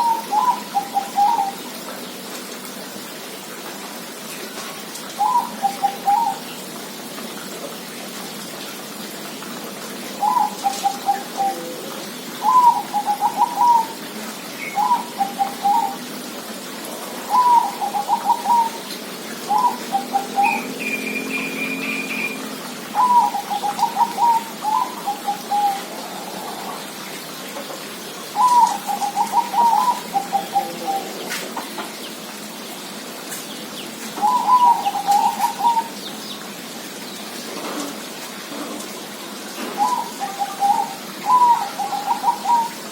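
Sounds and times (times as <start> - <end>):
dove cooing: 0.0 - 1.7, 5.2 - 6.5, 10.2 - 16.1, 17.2 - 27.0, 28.4 - 31.4, 34.2 - 36.0, 39.7 - 42.9
bird trilling: 19.5 - 25.8, 34.2 - 36.0.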